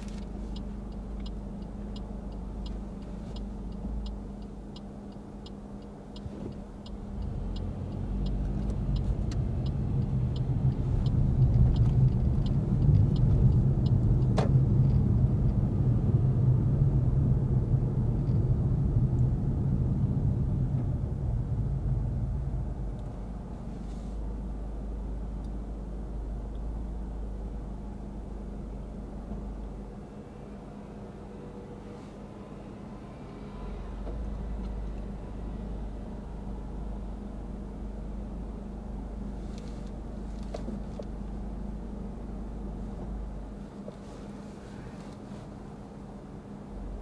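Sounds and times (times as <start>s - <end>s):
turn signal ticking: 0.0s - 16.9s
car engine and road noise: 0.0s - 47.0s.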